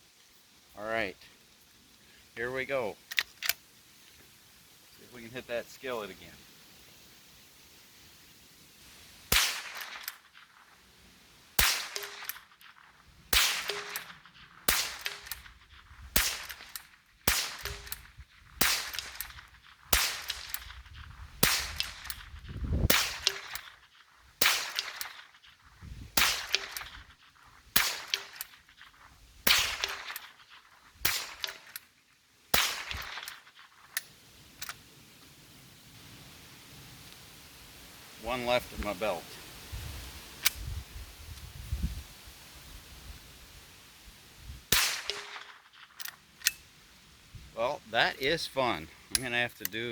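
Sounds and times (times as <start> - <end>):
rifle shots: 9.3 - 10.6, 11.6 - 23.8, 24.4 - 25.3, 26.1 - 27.1, 27.7 - 28.6, 29.4 - 31.8, 32.5 - 33.6, 44.7 - 45.9.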